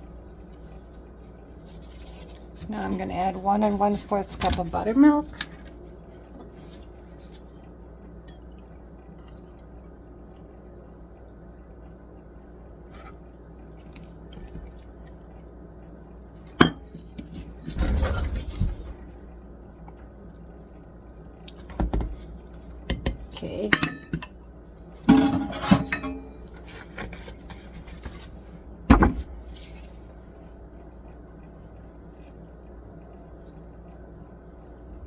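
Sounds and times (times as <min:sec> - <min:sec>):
steady low hum: 0:00.0 - 0:35.0
utensil clinking on bowl: 0:22.9 - 0:24.3
utensils clattering: 0:25.1 - 0:26.8.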